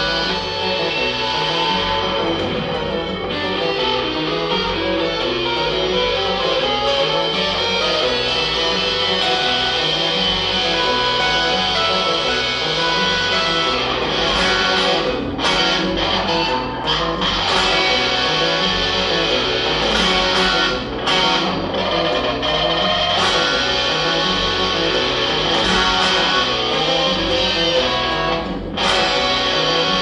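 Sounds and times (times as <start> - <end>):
electric guitar: 0.0 - 30.0
live rock band playing: 0.0 - 30.0
sharp percussive hits: 19.8 - 21.8, 25.4 - 27.8.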